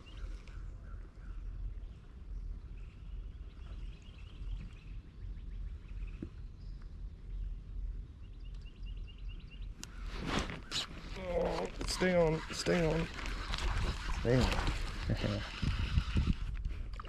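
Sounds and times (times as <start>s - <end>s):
steady low rumble: 0.0s - 12.5s.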